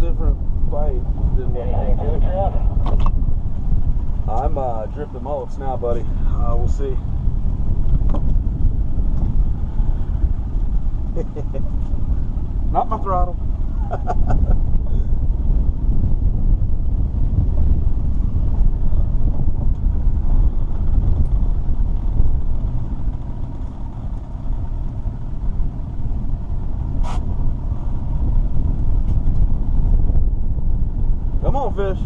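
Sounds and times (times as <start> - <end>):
boat engine rumble: 0.0 - 32.0.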